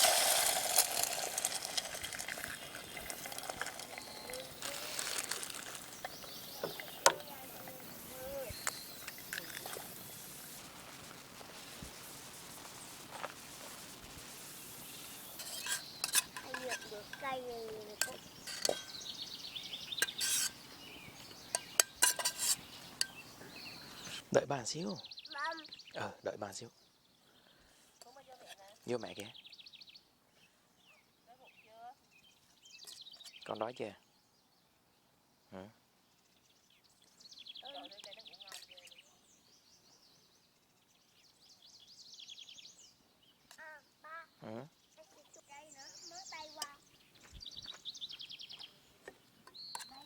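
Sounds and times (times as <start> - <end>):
food sizzling in a pan: 0.0 - 18.9
faint bird chirps: 2.4 - 10.2, 14.5 - 22.0, 22.6 - 50.0
metal utensils clinking on pans: 15.4 - 17.3, 18.0 - 19.0, 20.0 - 20.6, 21.5 - 23.2.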